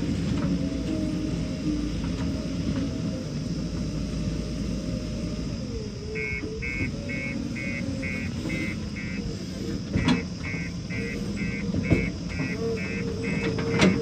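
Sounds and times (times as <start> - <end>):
backhoe loader engine whining: 0.0 - 14.0
reversing alarm beeping: 6.2 - 14.0.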